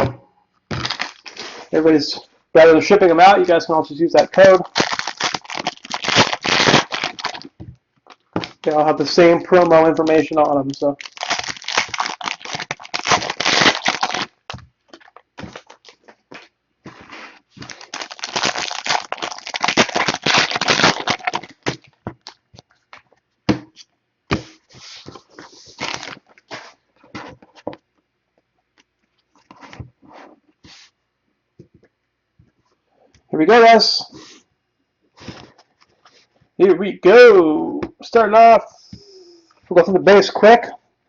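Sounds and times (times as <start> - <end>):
wrappers crinkling: 0.7 - 1.7, 3.4 - 23.0, 24.9 - 26.7.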